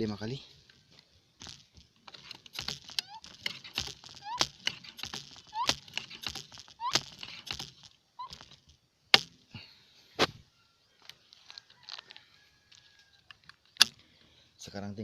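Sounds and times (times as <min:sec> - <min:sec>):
sharp clacks: 0:01.4 - 0:09.4
air rifle pump squeaks: 0:02.0 - 0:08.6.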